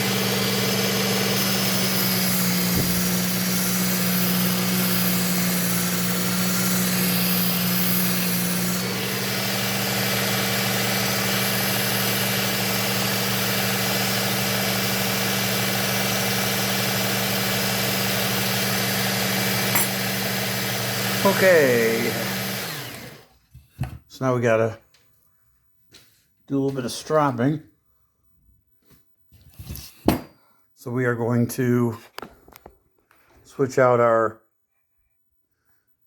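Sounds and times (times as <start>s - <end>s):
belt sharpener motor humming: 0.0s - 23.3s
knife grinding on belt: 19.7s - 19.9s.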